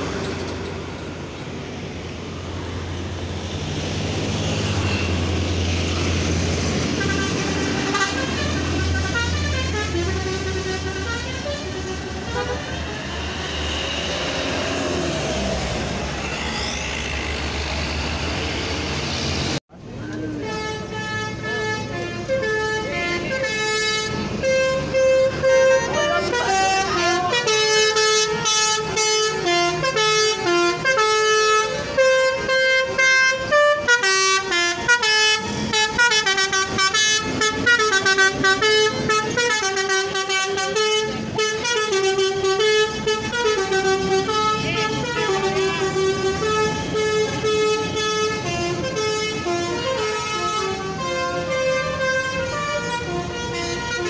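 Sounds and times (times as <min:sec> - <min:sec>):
road and engine noise: 0:00.0 - 0:54.0
musical bus horn melody: 0:06.6 - 0:12.8, 0:20.3 - 0:54.0.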